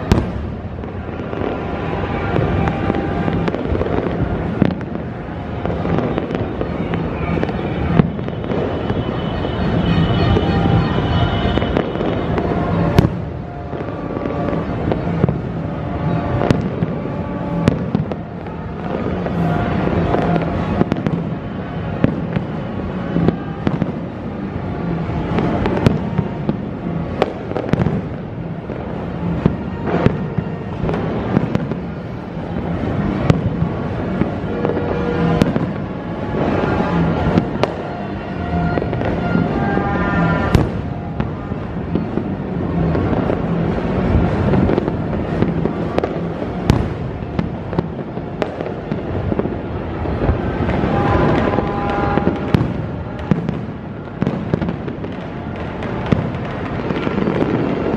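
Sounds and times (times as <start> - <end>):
firecracker bangs: 0.0 - 57.9
fireworks crackling: 0.0 - 57.9.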